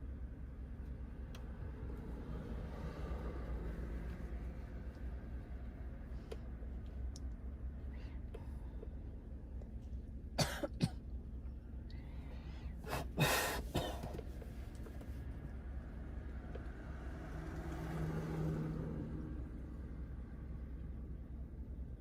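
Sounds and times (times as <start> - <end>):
steady low hum: 0.0 - 16.8
person coughing: 10.4 - 11.0, 12.9 - 14.2.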